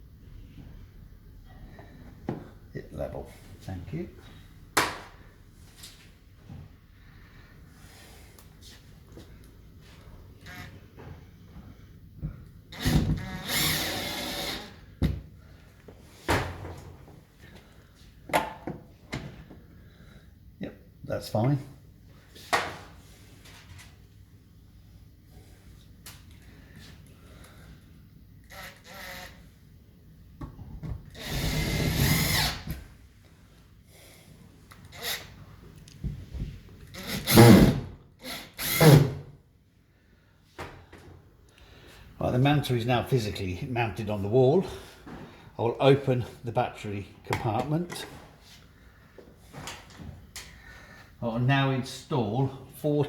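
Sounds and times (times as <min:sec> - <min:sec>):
cordless drill driving screw: 0:12.7 - 0:14.8, 0:28.4 - 0:29.4, 0:31.1 - 0:32.8, 0:34.9 - 0:35.3, 0:36.9 - 0:39.2.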